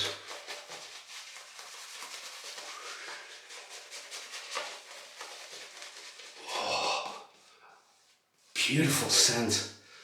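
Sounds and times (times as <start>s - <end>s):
shaving brush swishing lather: 0.0s - 6.4s.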